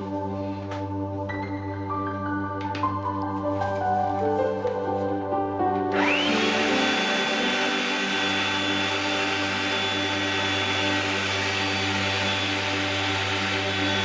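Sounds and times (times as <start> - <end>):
electric motor whining: 5.9 - 14.0.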